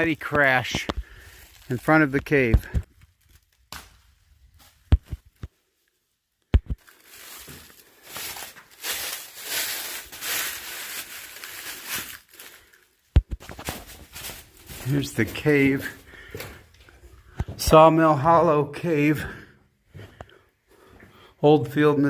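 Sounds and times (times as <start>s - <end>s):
rustling and crunching: 0.0s - 17.6s
sharp thumps: 6.5s - 6.8s.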